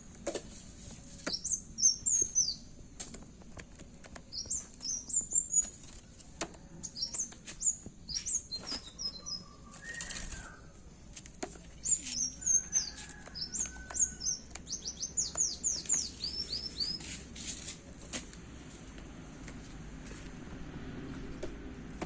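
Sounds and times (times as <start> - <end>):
bird whistling song: 1.3 - 2.6, 4.3 - 5.8, 6.8 - 10.8, 11.8 - 17.1.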